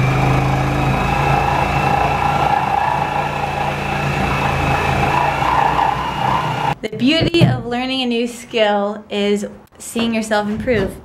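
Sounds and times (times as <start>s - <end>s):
reciprocating saw motor drone: 0.0s - 6.8s.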